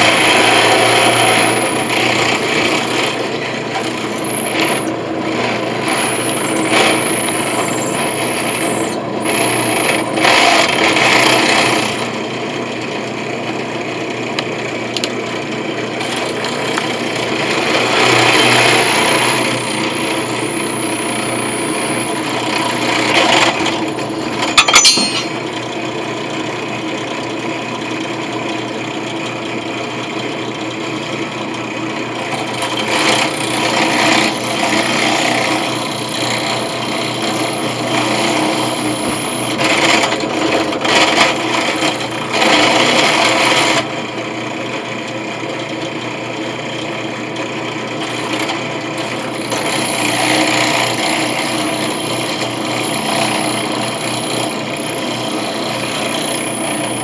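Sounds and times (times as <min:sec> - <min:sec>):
electric drill grinding into coin: 0:00.0 - 0:12.1, 0:16.0 - 0:25.4, 0:32.5 - 0:40.3, 0:48.0 - 0:57.0.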